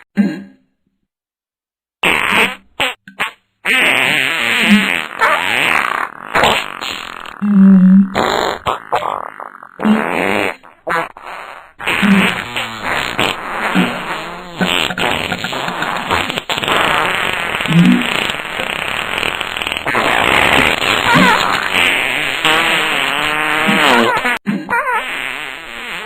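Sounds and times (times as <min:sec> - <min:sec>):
fart noises: 0:02.0 - 0:26.0.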